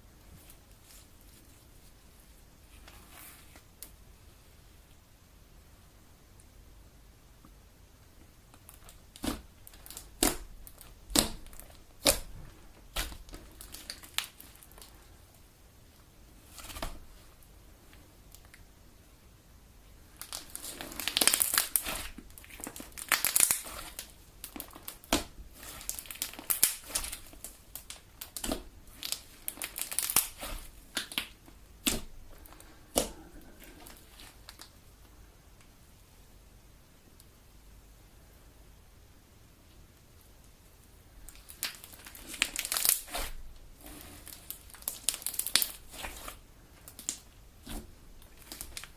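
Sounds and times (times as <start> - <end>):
slime popping and squelching: 8.7 - 14.8, 20.2 - 34.7, 41.3 - 48.9.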